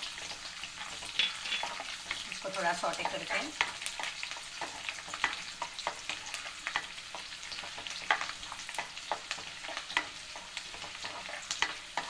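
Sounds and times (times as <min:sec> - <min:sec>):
spoon scraping a wok: 0:00.0 - 0:02.3
garlic sizzling in hot oil: 0:00.0 - 0:12.0.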